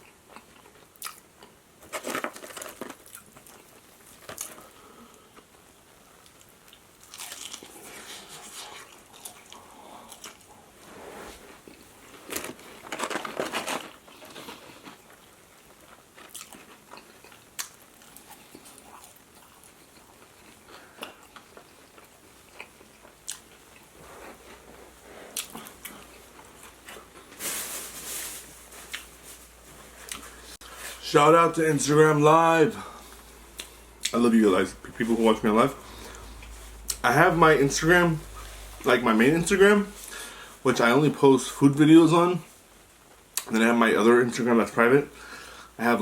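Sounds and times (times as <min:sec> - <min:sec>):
crunchy biting and chewing: 0:06.2 - 0:10.6, 0:11.7 - 0:24.7.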